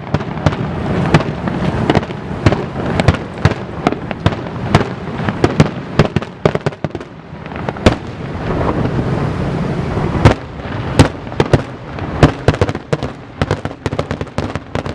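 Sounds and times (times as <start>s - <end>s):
fireworks bursting: 0.0s - 14.9s
rumbling noise: 6.8s - 13.4s.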